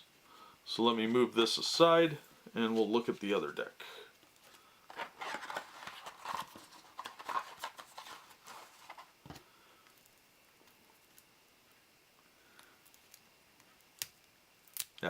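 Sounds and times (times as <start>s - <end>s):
cards tapping and rustling: 4.9s - 9.4s.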